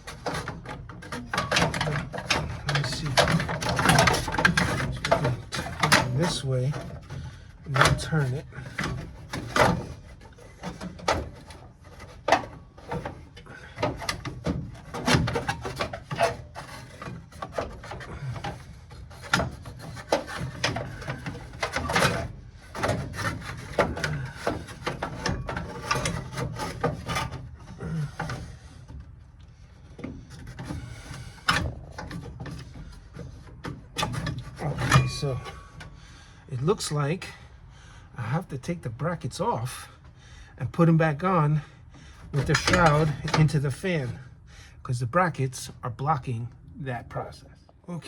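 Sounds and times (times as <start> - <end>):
plastic part scraping and rubbing: 0.0 - 36.0.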